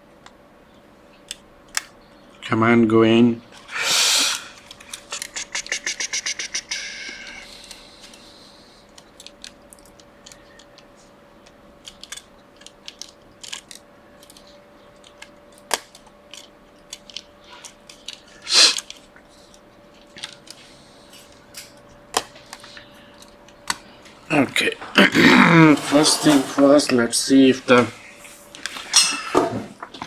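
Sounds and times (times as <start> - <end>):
faint steady hum: 0.0 - 30.0
scrape: 25.5 - 26.6.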